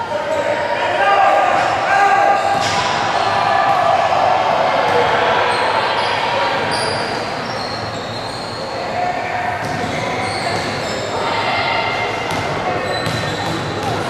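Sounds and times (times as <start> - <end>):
spectators talking and calling out: 0.0 - 14.0.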